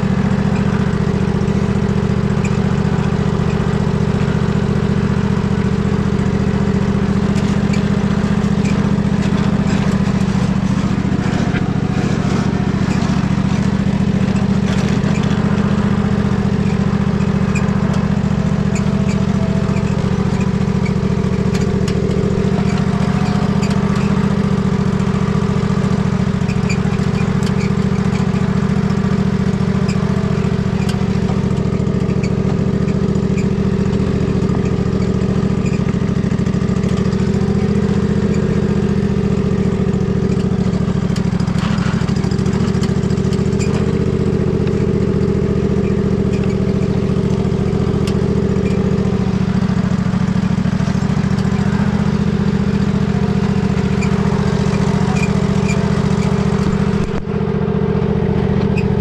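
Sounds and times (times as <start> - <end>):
riding lawn mower engine: 0.0 - 59.0.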